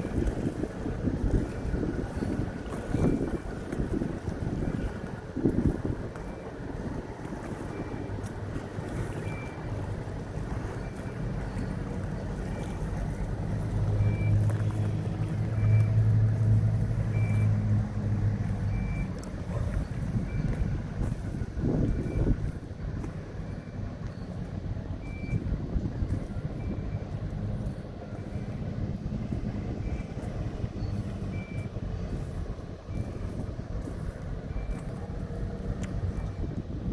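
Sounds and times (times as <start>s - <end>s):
diesel engine running: 0.0s - 36.9s
reversing warning beep: 1.4s - 3.8s, 4.5s - 5.0s, 5.8s - 6.6s, 7.5s - 8.2s, 8.9s - 9.8s, 10.6s - 13.1s, 13.9s - 14.4s, 15.4s - 16.0s, 17.0s - 17.6s, 18.6s - 22.6s, 23.4s - 24.4s, 25.0s - 28.8s, 29.7s - 36.6s
high warning beeps: 32.9s - 33.4s.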